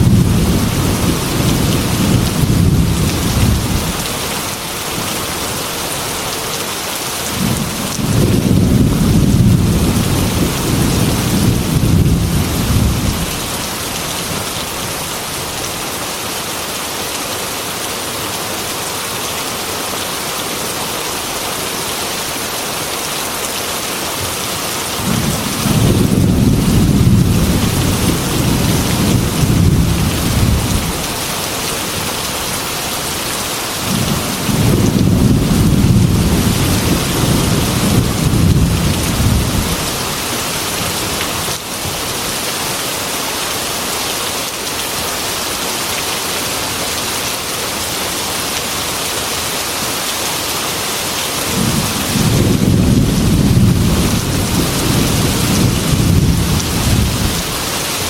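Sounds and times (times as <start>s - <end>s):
thunder rumbling: 0.0s - 4.1s, 7.3s - 14.5s, 25.0s - 31.2s, 33.8s - 40.0s, 51.5s - 57.7s
heavy rain on glass window: 0.0s - 16.4s, 24.2s - 42.8s, 46.6s - 58.0s.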